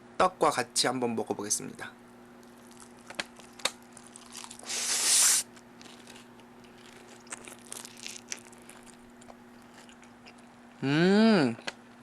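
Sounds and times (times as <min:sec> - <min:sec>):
crunchy bite of food: 0:02.4 - 0:10.6
soft chewing: 0:02.4 - 0:10.8.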